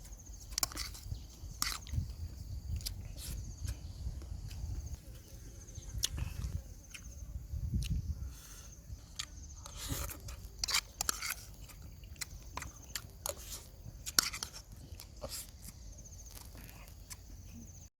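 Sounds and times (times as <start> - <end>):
person chewing and crunching food: 0.0 - 17.9.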